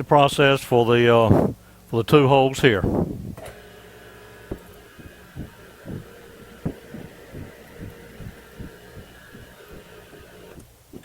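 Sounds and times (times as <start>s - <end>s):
milling machine humming: 3.7s - 11.0s
soft low knocks: 4.5s - 11.0s.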